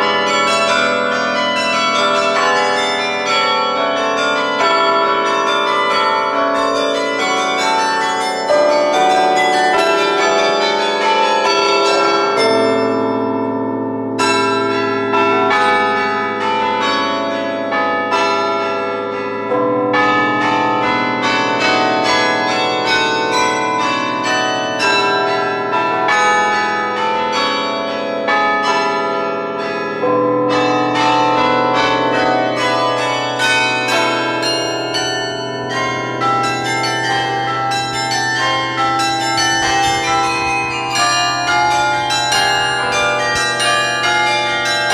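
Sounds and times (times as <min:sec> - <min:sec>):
carillon bells playing tune: 0:00.0 - 0:17.4, 0:30.5 - 0:44.9
low bells ringing on: 0:00.0 - 0:44.9.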